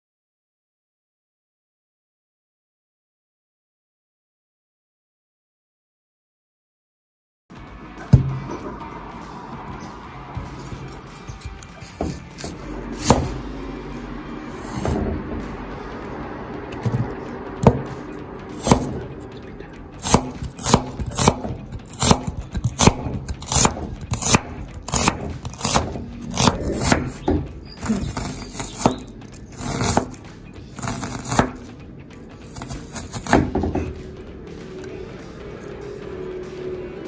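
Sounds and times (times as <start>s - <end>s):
background music: 7.5s - 37.0s
knife scraping board: 10.5s - 13.4s, 14.5s - 15.1s, 20.0s - 30.2s, 30.8s - 31.7s, 32.4s - 34.0s
knife chopping on cutting board: 12.0s - 13.4s, 20.0s - 27.4s, 28.1s - 30.2s, 30.8s - 31.6s, 32.5s - 33.9s.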